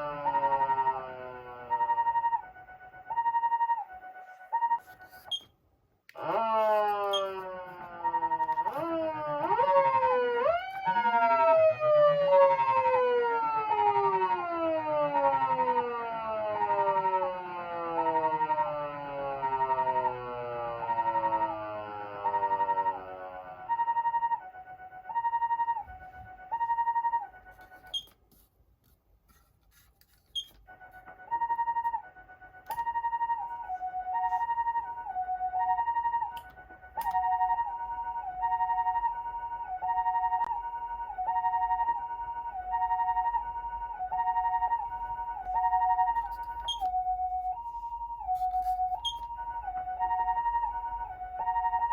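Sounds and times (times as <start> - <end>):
police siren wailing: 0.0 - 5.3, 6.1 - 28.1, 30.4 - 51.9
two-tone ambulance siren: 0.0 - 5.5, 6.1 - 28.2, 29.4 - 51.9
siren switch click: 36.3 - 37.3.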